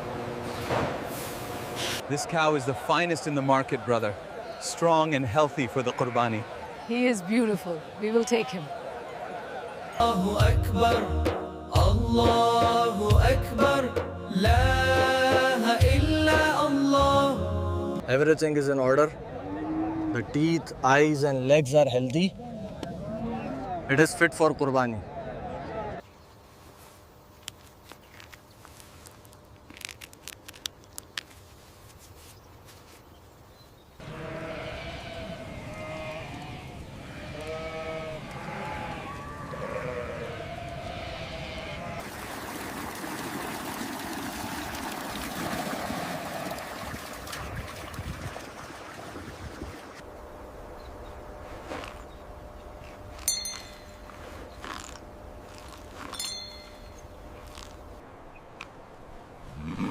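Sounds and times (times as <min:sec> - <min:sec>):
livestock bleating: 0:34.0 - 0:42.0
steady background hum: 0:50.0 - 0:59.9
sharp metallic clinks: 0:53.2 - 0:54.0, 0:56.1 - 0:57.1.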